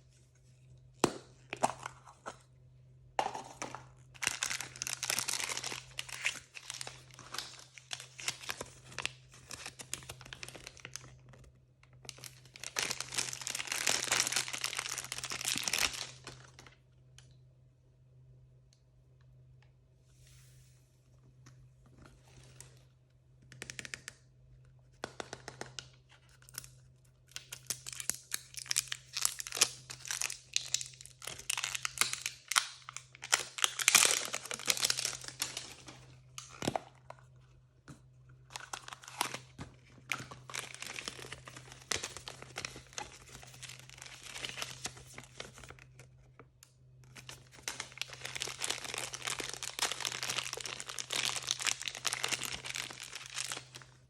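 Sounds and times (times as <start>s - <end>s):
faint steady hum: 0.0s - 54.0s
plastic packaging tearing and crumpling: 4.2s - 11.1s, 12.1s - 16.5s, 27.4s - 36.8s, 38.5s - 45.8s, 47.1s - 54.0s.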